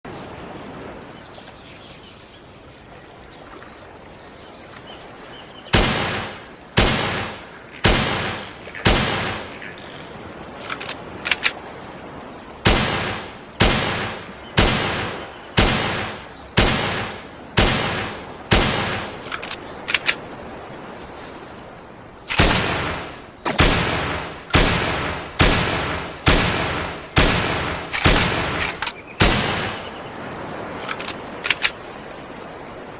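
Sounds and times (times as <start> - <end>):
pistol shots echoing: 5.8 - 9.4, 12.7 - 19.1, 22.4 - 29.9
light metallic clicks: 30.8 - 31.8.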